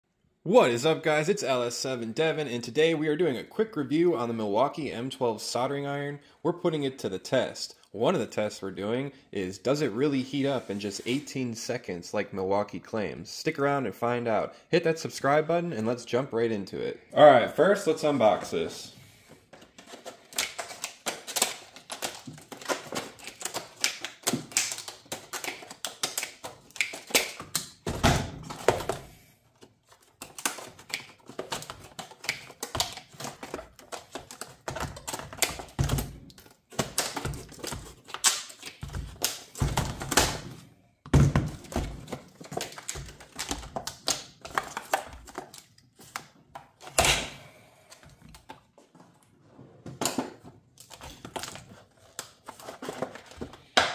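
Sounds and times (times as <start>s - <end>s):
packaging being opened: 19.6s - 27.8s, 29.6s - 40.4s, 41.6s - 47.2s, 50.8s - 53.6s.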